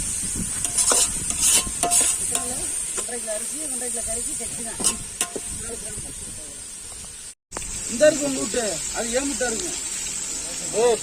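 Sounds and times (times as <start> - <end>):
food sizzling: 0.0 - 11.0
metal ladle scraping a pot: 0.5 - 3.5, 4.7 - 5.6.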